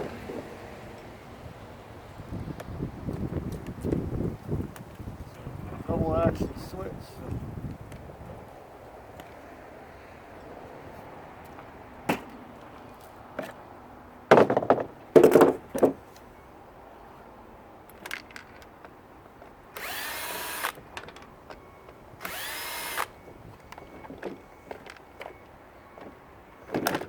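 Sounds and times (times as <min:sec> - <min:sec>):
parts knocking and rattling: 0:14.3 - 0:16.0, 0:17.9 - 0:19.0, 0:20.8 - 0:22.4, 0:26.7 - 0:27.0
power drill motor whine: 0:19.8 - 0:20.8, 0:22.2 - 0:23.9.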